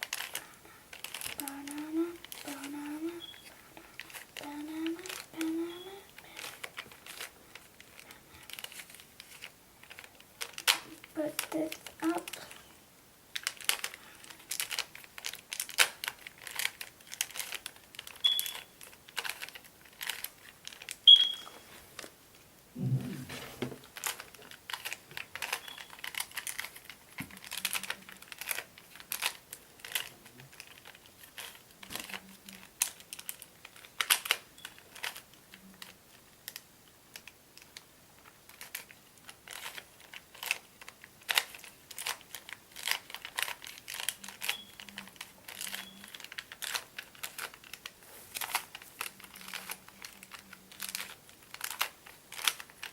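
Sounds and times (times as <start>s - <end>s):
puzzle cube clicking and rattling: 0.0s - 12.7s, 13.3s - 21.4s, 23.8s - 52.9s
puzzle cube squeak: 1.0s - 3.6s, 16.5s - 19.4s, 21.0s - 21.6s, 25.4s - 26.7s, 43.9s - 47.5s.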